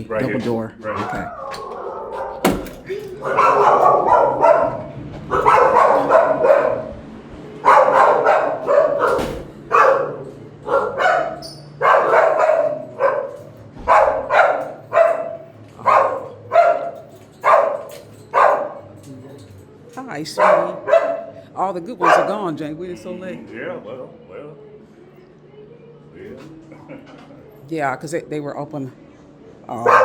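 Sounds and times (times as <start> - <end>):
dogs barking with echo: 0.9 - 19.3, 20.3 - 22.6, 29.7 - 30.0.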